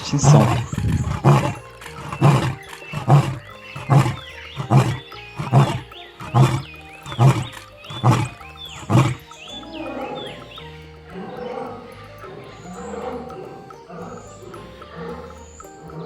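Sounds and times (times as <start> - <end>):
lion roaring: 0.0 - 10.5.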